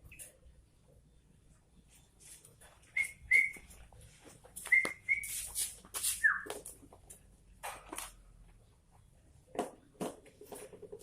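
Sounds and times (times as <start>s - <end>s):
bird whistling notes: 3.0s - 3.6s, 4.7s - 5.5s, 6.2s - 6.5s.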